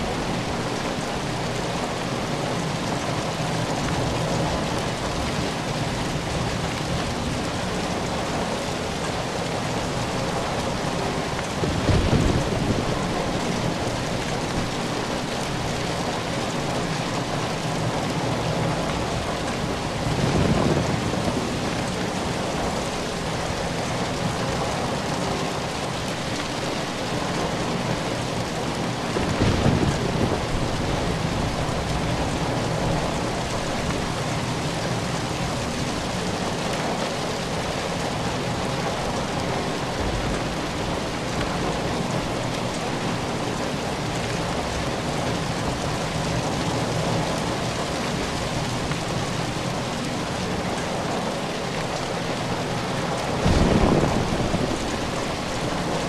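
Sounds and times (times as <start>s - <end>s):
steady rain falling: 0.0s - 56.0s
thunder rumble: 10.8s - 14.8s, 17.9s - 24.3s, 28.8s - 34.2s, 38.3s - 43.1s, 53.2s - 56.0s.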